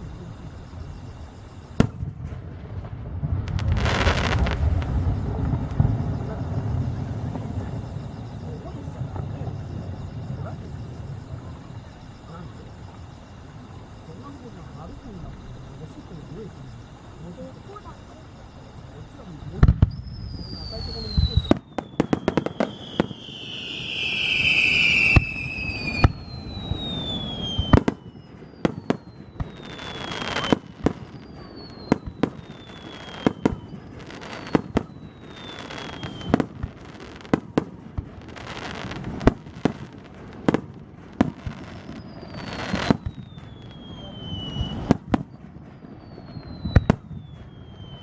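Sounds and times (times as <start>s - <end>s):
falling whistles: 0.0s - 1.8s, 3.5s - 36.5s, 41.6s - 48.0s
fireworks bangs: 0.0s - 48.0s
fireworks crackle: 0.0s - 48.0s
loud hissing: 3.5s - 21.5s.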